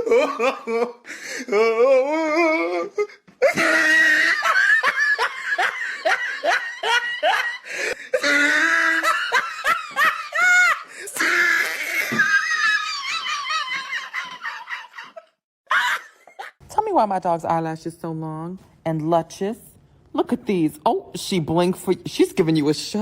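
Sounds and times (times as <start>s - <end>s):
person laughing hard: 0.0s - 16.5s.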